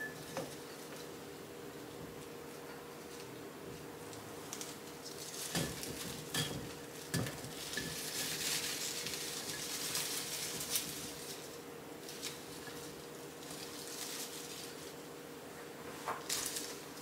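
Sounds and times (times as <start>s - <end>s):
scratchy rustling: 7.5s - 15.1s.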